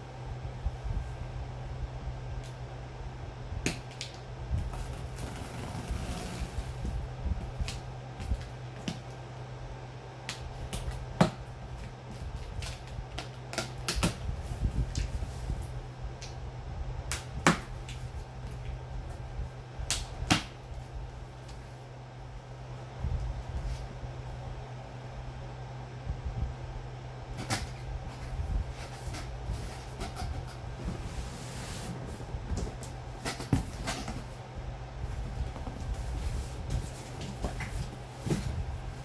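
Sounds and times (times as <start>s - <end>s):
cardboard box knocks and clicks: 32.5s - 34.4s.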